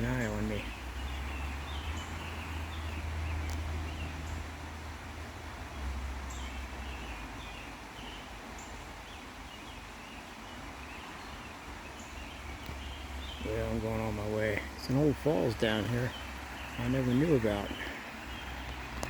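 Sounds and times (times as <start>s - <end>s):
steady hiss: 0.0s - 19.0s.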